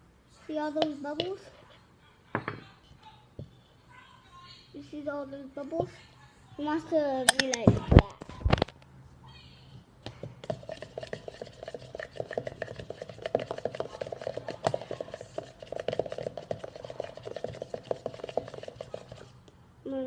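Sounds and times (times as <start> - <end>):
spoon stirring in a cup: 10.4 - 19.4.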